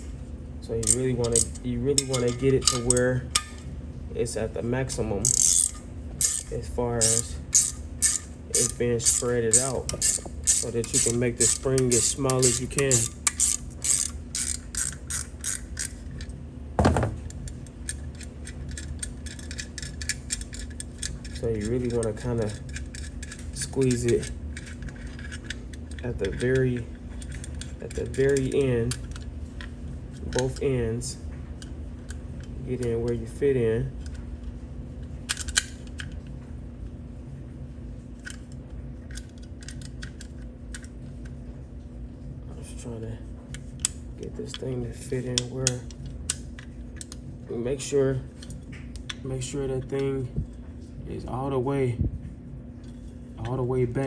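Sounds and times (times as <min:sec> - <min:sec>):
low hum: 0:00.0 - 0:20.4
ratcheting clicks: 0:05.2 - 0:16.0.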